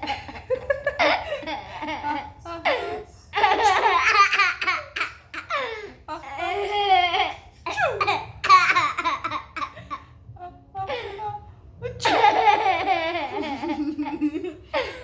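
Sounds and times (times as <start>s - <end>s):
baby laughing: 6.4s - 10.1s.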